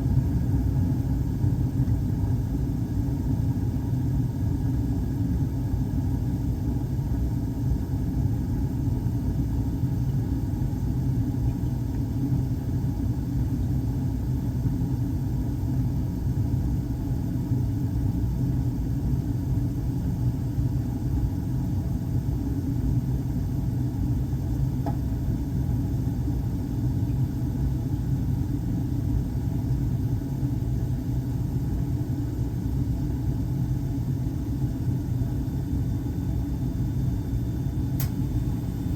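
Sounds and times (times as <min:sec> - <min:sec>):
hvac equipment rumble: 0:00.0 - 0:38.9
faint tick: 0:38.0 - 0:38.2.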